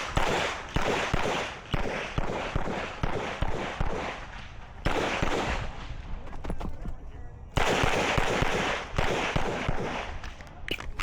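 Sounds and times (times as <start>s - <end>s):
pistol shots echoing: 0.0s - 5.7s, 7.6s - 10.2s.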